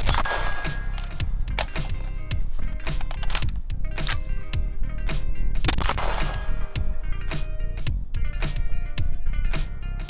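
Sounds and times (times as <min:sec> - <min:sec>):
sharp crack with ringing tail: 0:00.0 - 0:01.9, 0:05.6 - 0:07.0
background music with steady beat: 0:00.0 - 0:10.0.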